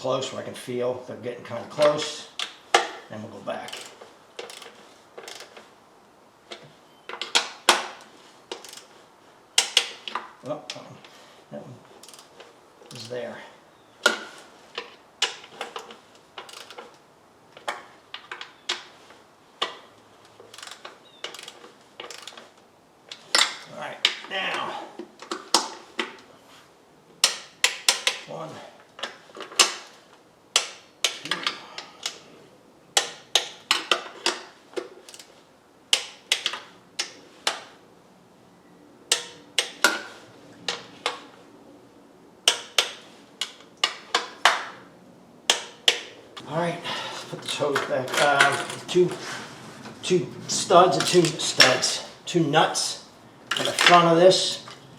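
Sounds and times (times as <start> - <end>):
hand ratchet clicking: 3.7 - 5.6, 6.5 - 8.9, 9.6 - 10.3, 12.0 - 13.1, 14.0 - 17.0, 20.4 - 22.5, 27.2 - 28.3, 29.0 - 32.2, 33.0 - 35.3, 35.9 - 37.7, 39.1 - 40.1, 42.4 - 44.7, 45.5 - 46.1, 53.5 - 54.0.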